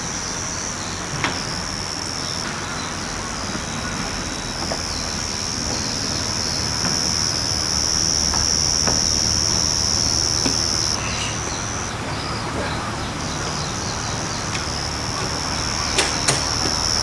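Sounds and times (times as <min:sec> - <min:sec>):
cricket trilling: 0:00.0 - 0:17.0.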